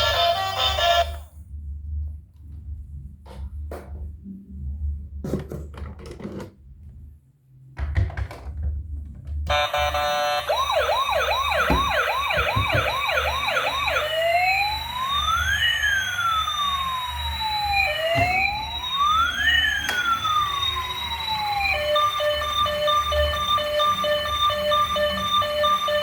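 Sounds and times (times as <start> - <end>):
electronic siren: 9.5 - 26.0.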